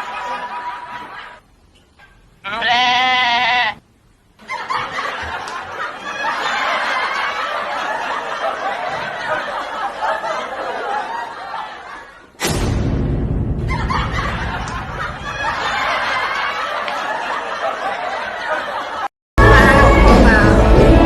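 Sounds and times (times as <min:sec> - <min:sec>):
music: 0:19.4 - 0:21.0.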